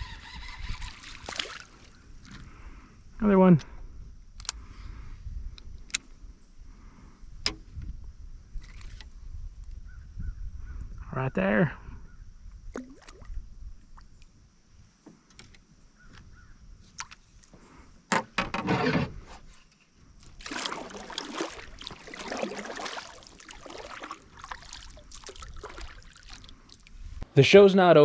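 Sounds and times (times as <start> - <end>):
water splashing beside a canoe: 1.0 - 2.4, 20.2 - 26.8.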